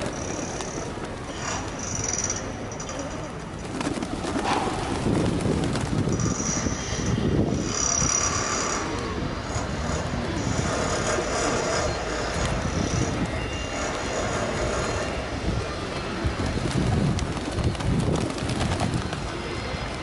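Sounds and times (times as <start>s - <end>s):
street noise rumble: 0.0s - 20.0s.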